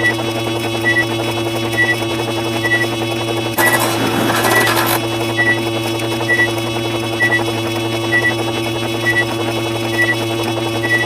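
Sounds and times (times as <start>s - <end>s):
rapid busy clatter: 3.6s - 5.2s.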